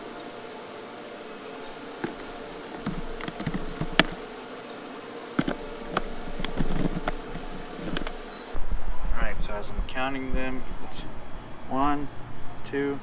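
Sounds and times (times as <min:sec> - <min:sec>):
steady buzzing hum: 0:00.0 - 0:08.6
handling noise: 0:01.2 - 0:08.6.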